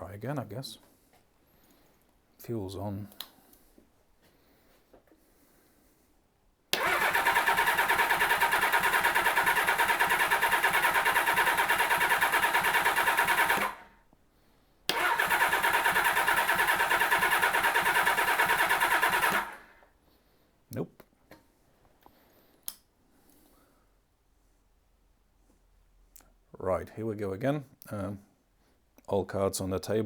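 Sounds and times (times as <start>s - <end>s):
motorcycle electric starter cranking: 6.8s - 13.9s, 14.9s - 19.8s.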